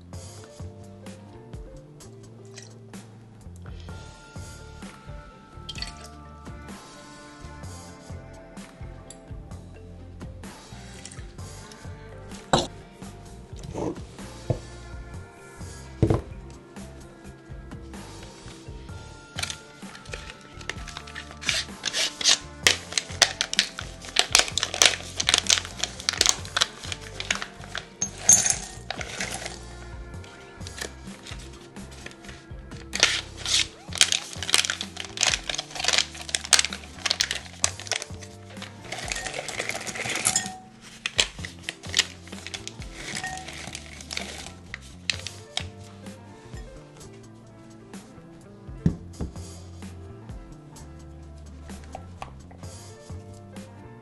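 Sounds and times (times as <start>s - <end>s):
soft background music: 0.0s - 54.0s
scraping rustles: 19.4s - 46.2s.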